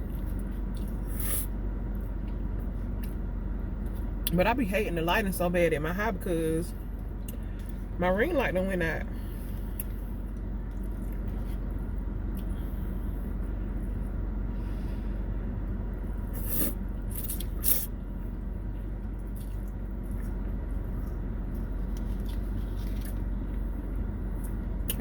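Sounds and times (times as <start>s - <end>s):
low background hum: 0.0s - 25.0s
chewing and mouth clicks: 9.6s - 11.7s, 19.1s - 23.2s.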